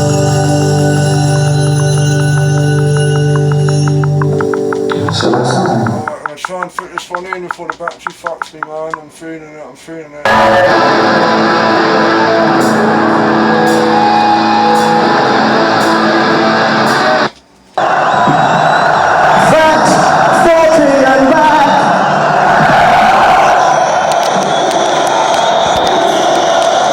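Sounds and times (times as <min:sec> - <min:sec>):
picked guitar notes: 0:00.0 - 0:06.7, 0:10.3 - 0:17.3
rock band playing: 0:00.0 - 0:07.7, 0:10.3 - 0:17.4.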